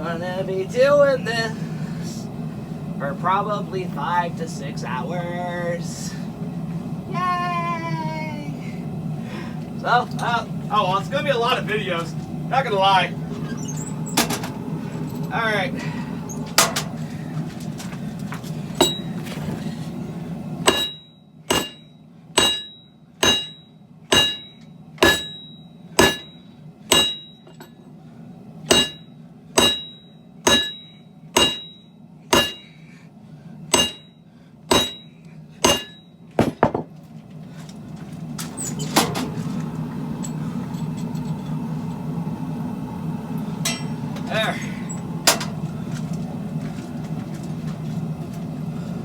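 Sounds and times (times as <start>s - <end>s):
steady low hum: 0.0s - 49.0s
hammer blows on anvil: 20.6s - 27.8s, 28.7s - 29.0s, 29.6s - 32.8s, 33.7s - 36.9s, 43.6s - 44.1s.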